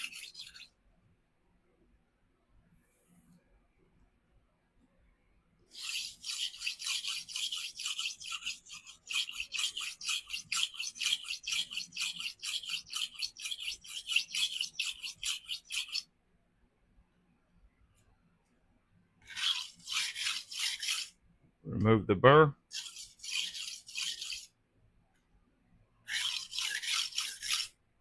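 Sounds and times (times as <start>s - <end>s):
knife scraping on sharpening stone: 0.0s - 0.7s, 5.7s - 16.1s, 19.2s - 21.1s, 22.7s - 24.5s, 26.1s - 27.8s.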